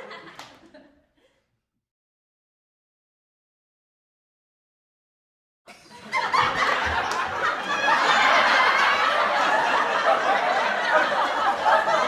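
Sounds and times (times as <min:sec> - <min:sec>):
crowd laughing: 0:00.0 - 0:01.1, 0:05.7 - 0:12.0.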